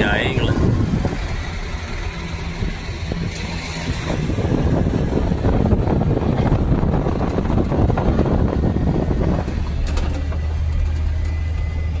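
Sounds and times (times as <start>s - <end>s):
road rumble: 0.0s - 12.0s
truck engine: 0.0s - 12.0s.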